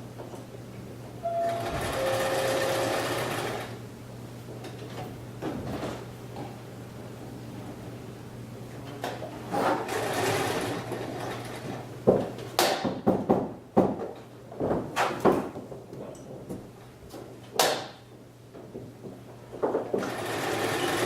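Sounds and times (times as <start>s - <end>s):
sewing machine running: 1.2s - 3.8s, 9.8s - 11.6s, 20.0s - 21.0s.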